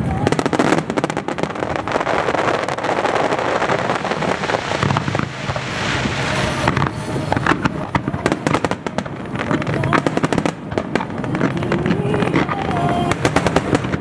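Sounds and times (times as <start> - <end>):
fireworks bursts and crackling: 0.0 - 14.0.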